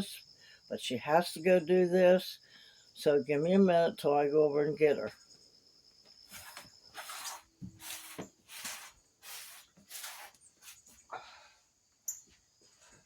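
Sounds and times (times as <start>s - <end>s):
shuffling footsteps: 6.3s - 11.0s.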